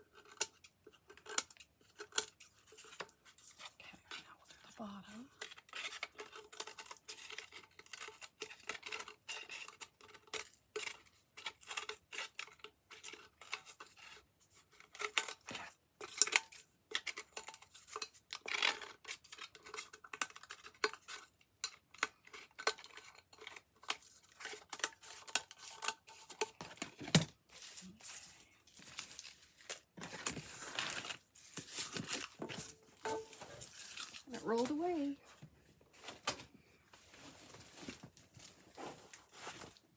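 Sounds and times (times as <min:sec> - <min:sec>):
paper rustling: 0:26.8 - 0:35.1, 0:35.9 - 0:39.9.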